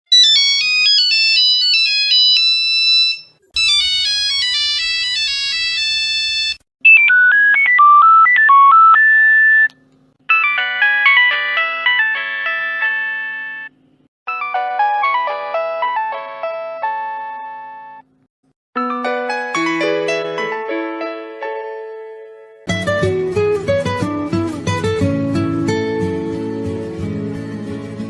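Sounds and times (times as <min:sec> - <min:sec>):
phone ringtone melodies: 0:00.1 - 0:09.7, 0:10.3 - 0:13.7, 0:14.3 - 0:18.0, 0:18.8 - 0:21.3.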